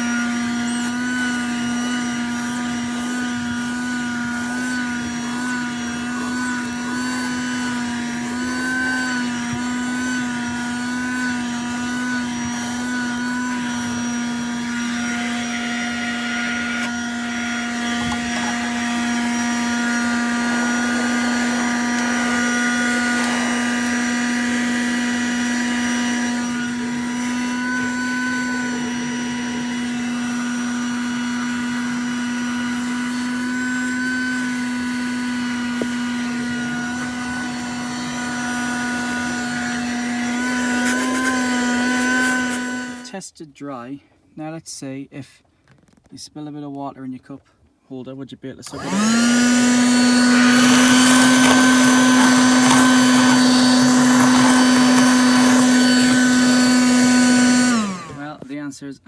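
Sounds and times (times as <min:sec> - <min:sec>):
car vacuum cleaner motor whine: 0:00.0 - 0:43.1, 0:48.6 - 0:58.6
vacuum airy rushing hiss: 0:18.2 - 0:27.2.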